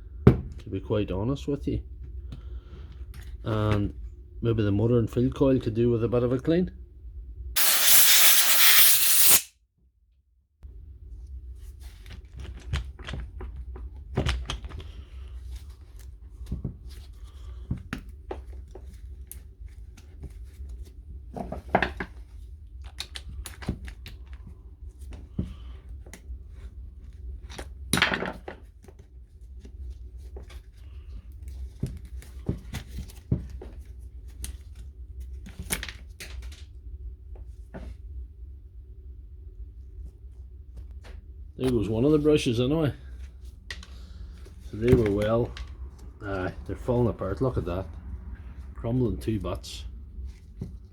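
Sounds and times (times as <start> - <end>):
loud hiss: 7.6 - 9.5.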